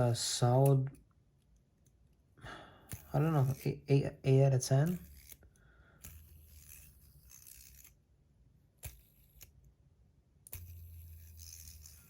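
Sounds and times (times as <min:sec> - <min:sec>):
fidget spinner clicks: 0:06.0 - 0:08.0, 0:08.8 - 0:09.6, 0:10.4 - 0:12.0.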